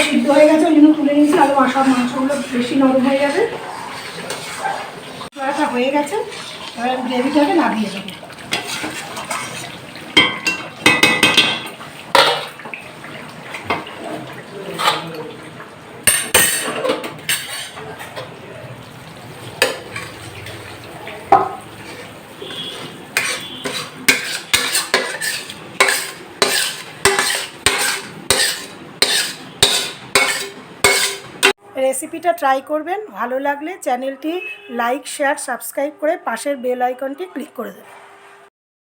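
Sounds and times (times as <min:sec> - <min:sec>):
metal utensil clinking on pot: 0:10.2 - 0:12.5, 0:16.1 - 0:18.2, 0:22.5 - 0:31.5.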